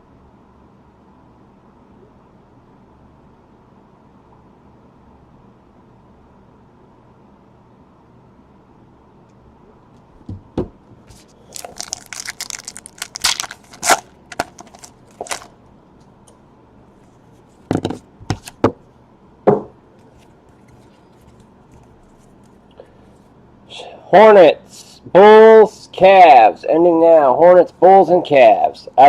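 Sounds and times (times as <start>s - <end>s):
wrapper tearing and crinkling: 11.1s - 15.5s.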